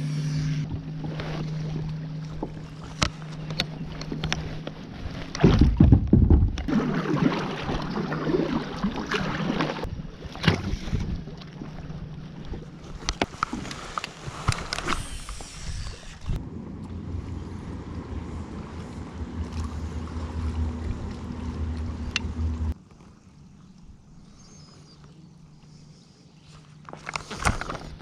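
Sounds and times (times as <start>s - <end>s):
steady low hum: 0.0s - 13.2s, 14.7s - 28.0s
water slapping against a hull: 0.6s - 15.0s.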